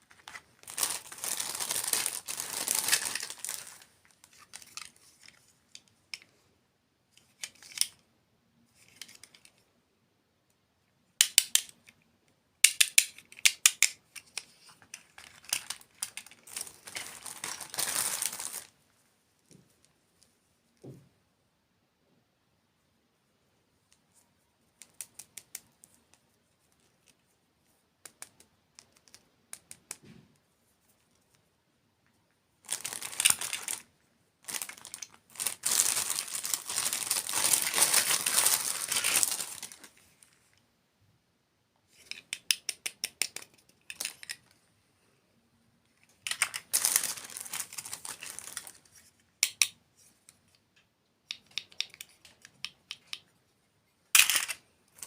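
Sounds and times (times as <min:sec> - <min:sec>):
plastic packaging crinkling: 0:00.0 - 0:05.4, 0:14.6 - 0:18.7, 0:32.6 - 0:40.0, 0:46.2 - 0:48.9.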